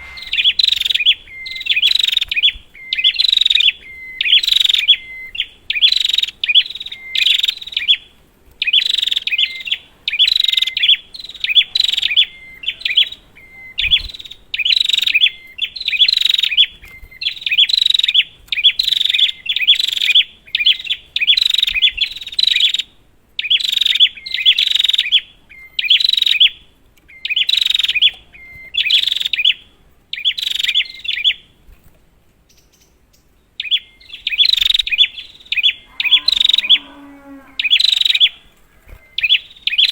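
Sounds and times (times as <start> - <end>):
bird singing sharp chirps: 0.0 - 22.8, 32.5 - 39.9.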